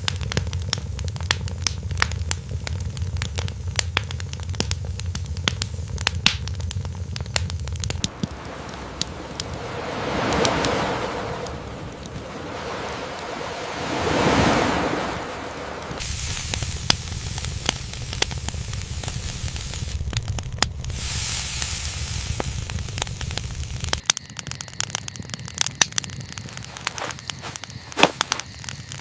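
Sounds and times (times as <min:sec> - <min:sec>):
campfire crackling and popping: 0:00.0 - 0:29.0
low rumble: 0:07.8 - 0:24.0
wave washing in: 0:08.0 - 0:20.1, 0:20.8 - 0:24.0.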